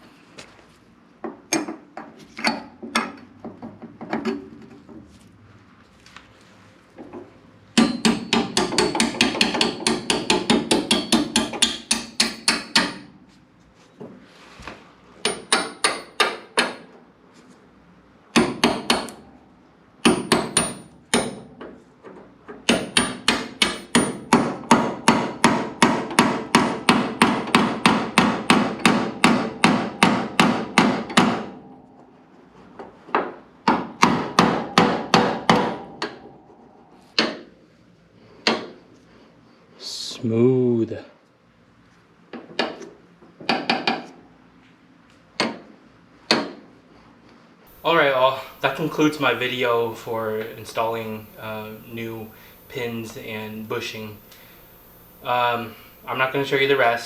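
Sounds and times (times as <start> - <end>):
rapid hammer blows on metal: 7.8 - 13.1, 18.4 - 19.2, 20.0 - 21.5, 22.7 - 31.7, 47.7 - 57.0.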